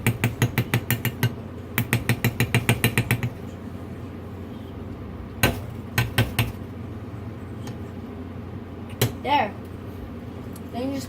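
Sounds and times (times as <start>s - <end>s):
utensil knocking against a pot: 0.0s - 3.4s, 5.4s - 6.6s
utensil tapping a pot: 0.0s - 3.4s.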